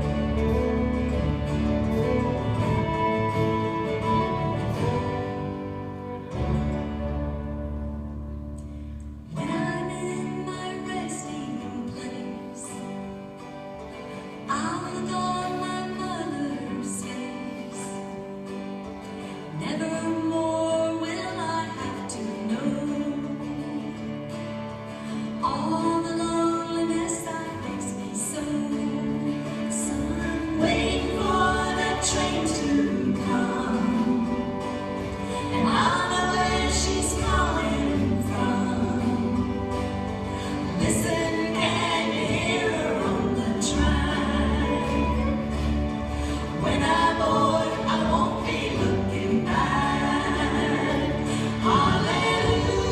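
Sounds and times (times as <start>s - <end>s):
bass: 0.0s - 52.9s
guitar: 0.0s - 52.9s
piano: 0.0s - 52.9s
female vocal trio singing: 25.4s - 52.9s.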